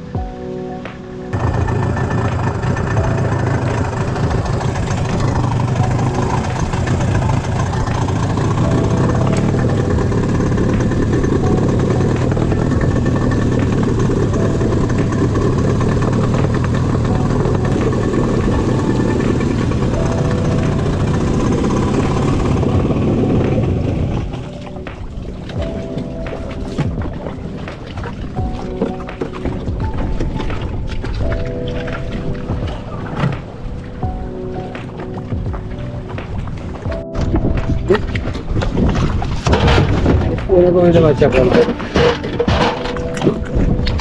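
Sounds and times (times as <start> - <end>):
water noise: 0.0 - 44.0
wind: 0.0 - 44.0
boat motor running: 1.3 - 44.0.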